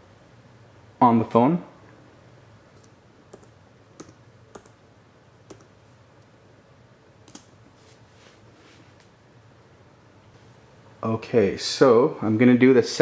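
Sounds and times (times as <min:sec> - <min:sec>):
faint laptop keystrokes: 0:02.8 - 0:04.8, 0:05.5 - 0:05.7, 0:07.2 - 0:07.5.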